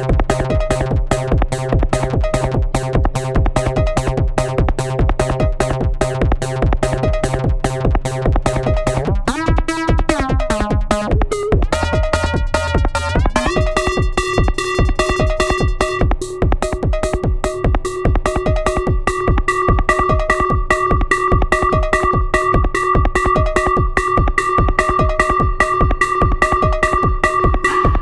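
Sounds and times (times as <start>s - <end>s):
fast drum machine beat: 0.0s - 28.0s
sustained synth tones: 16.7s - 28.0s.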